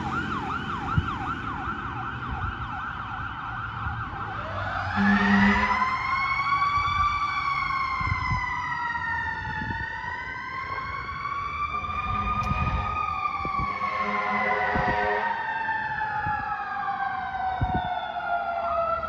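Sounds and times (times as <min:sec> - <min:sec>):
truck engine rumble: 0:00.0 - 0:17.9
fire engine siren wailing: 0:00.0 - 0:19.0
low horn tone: 0:05.0 - 0:06.0, 0:11.8 - 0:15.4.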